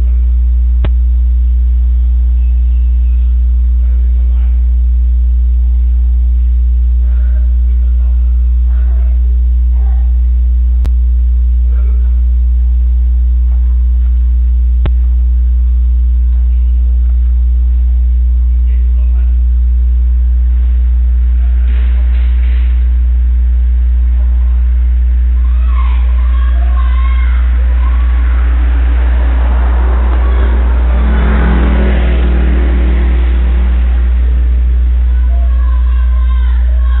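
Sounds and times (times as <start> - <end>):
distant voices: 0.0 - 10.8, 11.4 - 37.0
electrical mains hum: 0.0 - 37.0
rough burst of noise: 26.2 - 36.3.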